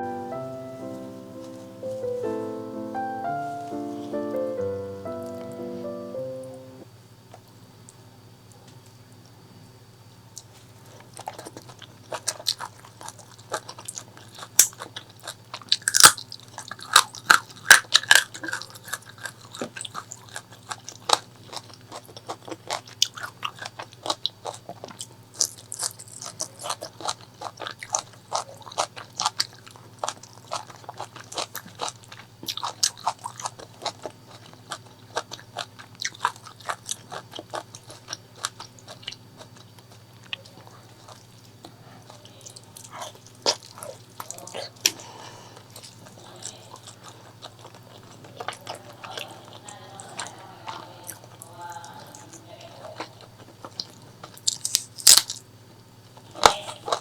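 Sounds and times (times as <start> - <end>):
person chewing food: 10.4 - 55.4, 56.4 - 57.0.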